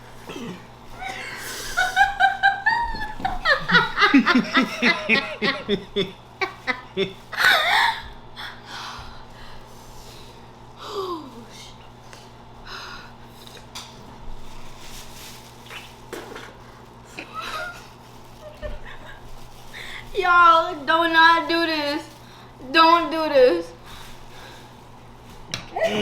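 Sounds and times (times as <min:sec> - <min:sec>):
person laughing hard: 0:01.0 - 0:08.1, 0:25.8 - 0:26.0.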